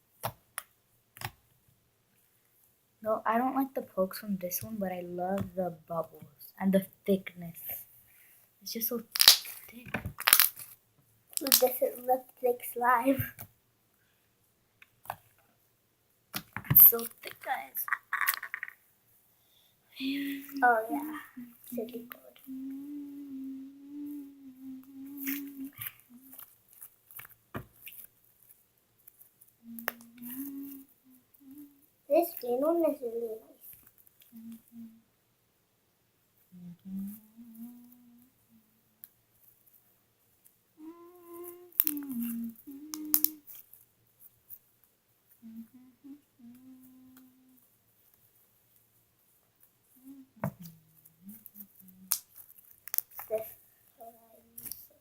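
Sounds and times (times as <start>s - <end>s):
slime popping and clicking: 9.1s - 10.7s, 11.4s - 11.8s, 42.9s - 43.4s
girl humming: 20.0s - 26.4s, 29.6s - 31.8s, 34.3s - 35.0s, 36.5s - 38.8s, 40.8s - 43.5s, 45.4s - 47.6s, 50.0s - 52.2s.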